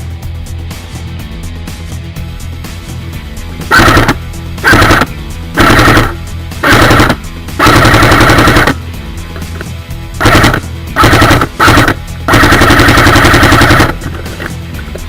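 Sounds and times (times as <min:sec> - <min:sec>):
background music: 0:00.0 - 0:15.0
airsoft gun full-auto bursts: 0:03.7 - 0:08.8, 0:10.2 - 0:14.5.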